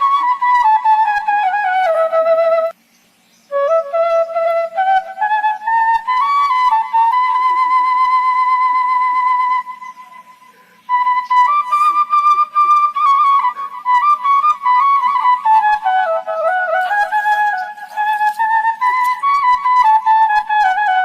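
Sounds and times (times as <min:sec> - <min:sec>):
solo flute slow melody: 0:00.0 - 0:02.8, 0:03.5 - 0:21.0.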